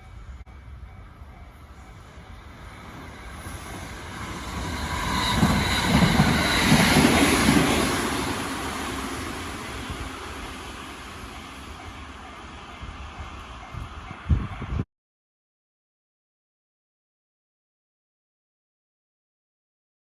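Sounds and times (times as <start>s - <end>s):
train passing: 0.0s - 14.8s.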